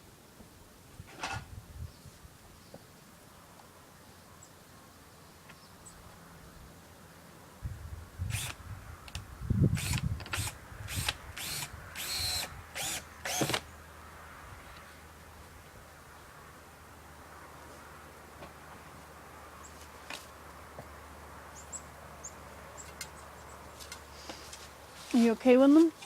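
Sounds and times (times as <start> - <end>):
power drill driving a screw: 8.3 - 8.6, 9.8 - 13.6.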